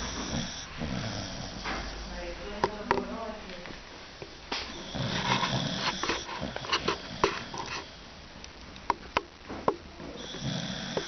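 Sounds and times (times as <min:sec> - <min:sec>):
dog snoring: 0:00.0 - 0:02.2, 0:04.7 - 0:08.0, 0:10.2 - 0:11.0.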